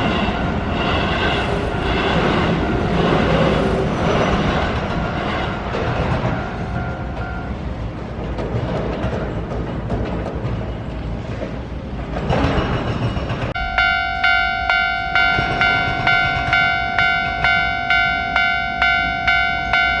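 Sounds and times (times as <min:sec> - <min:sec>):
level crossing warning bell: 0:06.2 - 0:07.7, 0:13.6 - 0:20.0.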